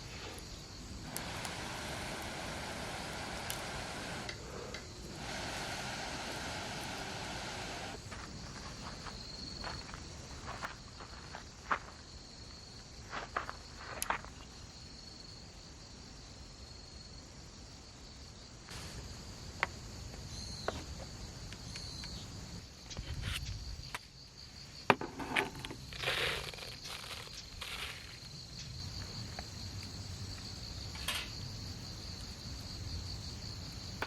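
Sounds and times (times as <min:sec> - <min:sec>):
crickets trilling: 0:00.0 - 0:34.0.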